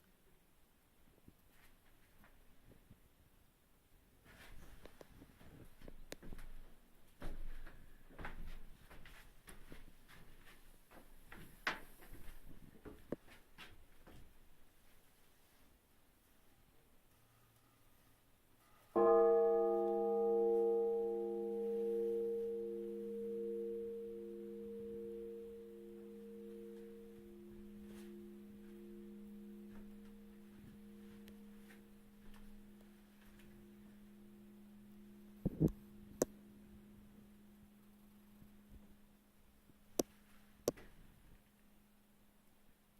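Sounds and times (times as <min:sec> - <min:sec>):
bell ringing: 0:19.0 - 0:31.6.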